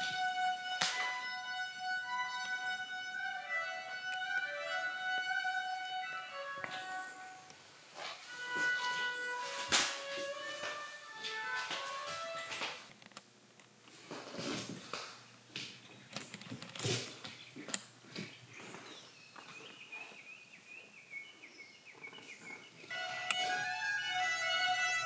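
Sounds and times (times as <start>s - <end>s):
violin playing: 0.0s - 7.6s, 8.2s - 12.9s, 22.9s - 25.0s
bird chirping: 17.3s - 23.5s.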